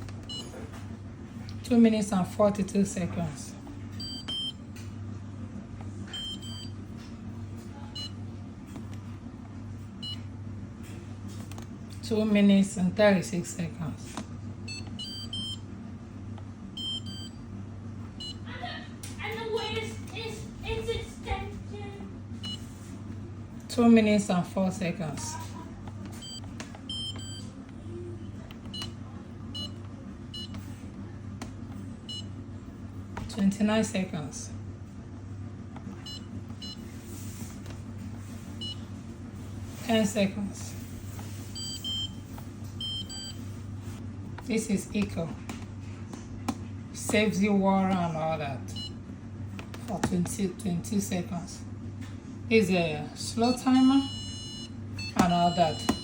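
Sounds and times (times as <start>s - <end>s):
steady low hum: 0.0s - 56.0s
dishwasher button beeps: 4.0s - 4.6s, 26.2s - 27.4s, 53.4s - 56.0s.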